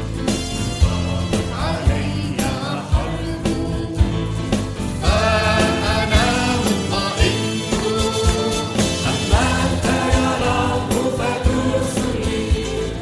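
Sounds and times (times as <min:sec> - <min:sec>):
regular drum beat: 0:00.0 - 0:13.0
hymn sung over instrumental backing: 0:00.8 - 0:04.4, 0:05.0 - 0:13.0.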